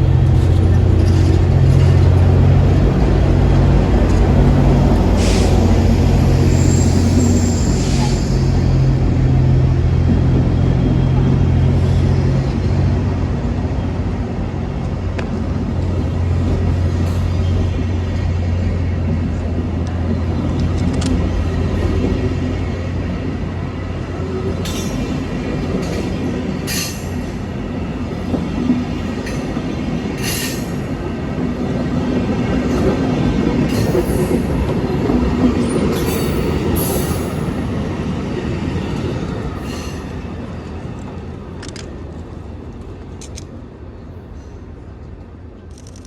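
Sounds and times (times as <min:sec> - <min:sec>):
train wheels rumbling: 0:00.0 - 0:46.0
high-pitched wheel squeals: 0:06.4 - 0:08.6.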